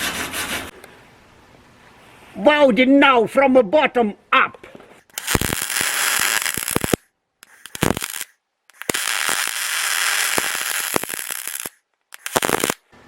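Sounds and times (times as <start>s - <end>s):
welding arc crackling and hissing: 5.0s - 12.8s.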